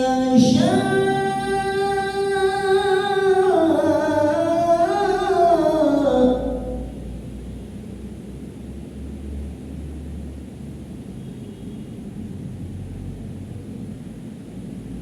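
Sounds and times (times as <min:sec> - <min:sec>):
man reciting melodically: 0:00.0 - 0:07.1.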